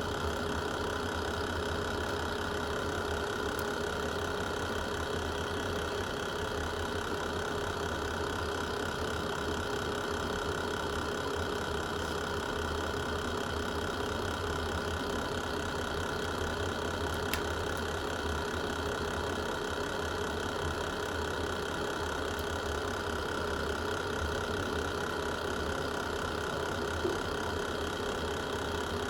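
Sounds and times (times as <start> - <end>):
fireplace fire burning: 3.2 - 4.2, 15.7 - 18.8
fire popping: 17.1 - 17.9.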